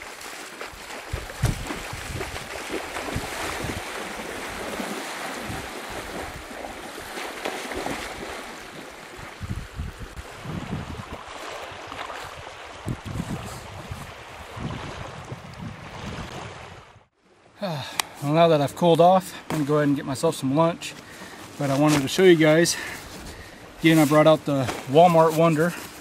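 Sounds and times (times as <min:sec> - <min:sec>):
lake waves lapping at shore: 0:00.0 - 0:26.0
wind gusting over microphone: 0:01.1 - 0:07.1, 0:09.1 - 0:17.1.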